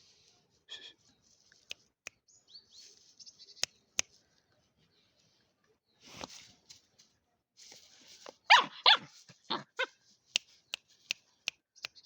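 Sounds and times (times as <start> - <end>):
puppy yapping: 8.5 - 9.9.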